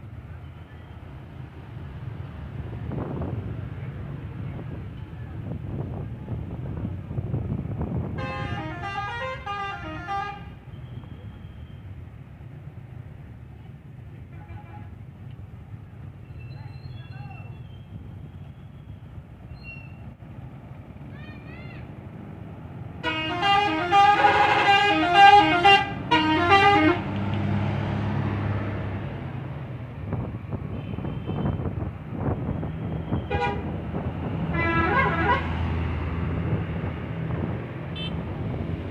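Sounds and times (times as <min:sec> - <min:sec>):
bus engines and traffic rumble: 0:00.0 - 0:38.9
bus musical horn tune: 0:08.2 - 0:10.6, 0:23.0 - 0:27.1, 0:33.2 - 0:33.7, 0:34.5 - 0:35.6
bus engine running: 0:20.0 - 0:38.9.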